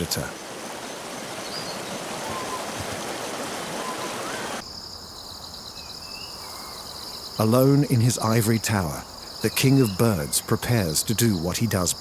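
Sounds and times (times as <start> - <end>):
rushing water: 0.0 - 4.6
high-pitched insect chorus: 4.6 - 12.0
bird chirps: 5.2 - 7.5.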